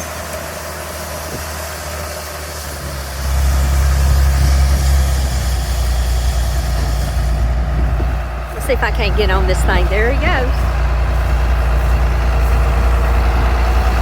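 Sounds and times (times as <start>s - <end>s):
tractor diesel engine running: 0.0s - 14.0s
wind on microphone: 2.7s - 14.0s.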